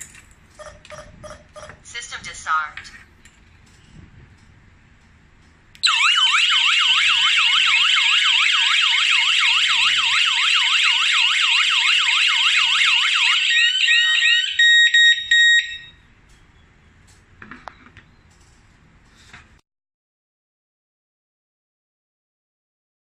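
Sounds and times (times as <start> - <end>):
warbling alarm siren: 5.8 - 16.0
alarm beeps: 12.6 - 16.1.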